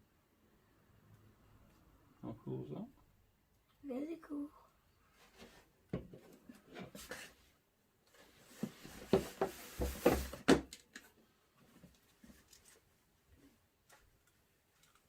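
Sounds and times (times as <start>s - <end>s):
rustling: 11.6s - 14.1s.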